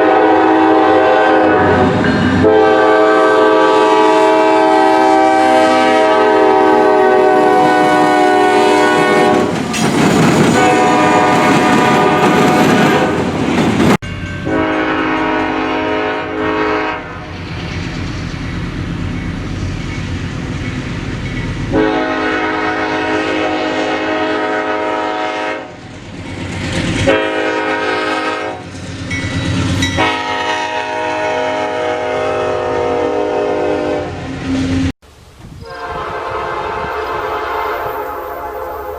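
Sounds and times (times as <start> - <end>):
locomotive air horn blasts: 0.0 - 9.6, 10.6 - 13.1, 14.4 - 17.4, 21.7 - 25.8, 27.0 - 28.7, 30.0 - 34.9, 35.6 - 38.9
train wheels clattering on rails: 9.0 - 15.9, 17.3 - 21.8.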